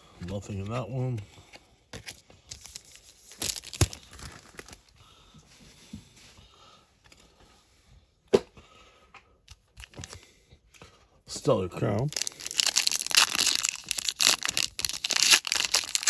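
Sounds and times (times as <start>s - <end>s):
foil wrapper tearing and crinkling: 2.6s - 4.8s, 11.9s - 16.0s.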